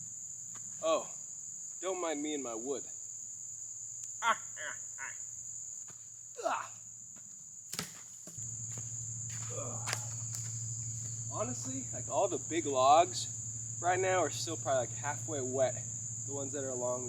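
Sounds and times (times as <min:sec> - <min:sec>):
high-pitched insect drone: 0:07.8 - 0:17.0
low steady hum: 0:07.8 - 0:17.0.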